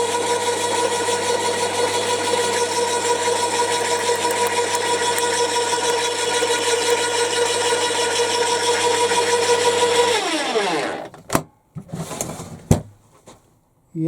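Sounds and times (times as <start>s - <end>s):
garden shredder whining: 0.0s - 11.2s.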